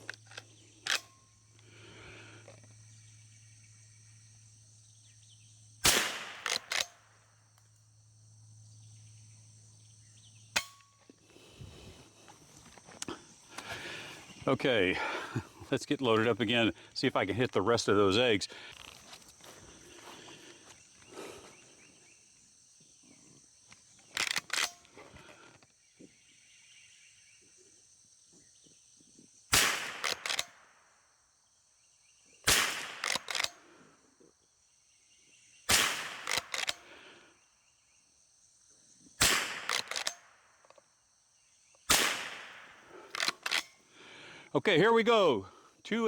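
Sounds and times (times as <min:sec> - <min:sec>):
mechanical clicks of gun action: 0:00.0 - 0:01.2, 0:05.9 - 0:07.0, 0:24.1 - 0:24.9, 0:29.7 - 0:30.6, 0:32.6 - 0:33.6, 0:35.8 - 0:36.9, 0:39.3 - 0:40.8, 0:42.0 - 0:43.8
rifle shots: 0:05.8 - 0:07.0, 0:29.5 - 0:30.6, 0:32.5 - 0:33.6, 0:35.7 - 0:36.9, 0:39.2 - 0:40.3, 0:41.9 - 0:43.7.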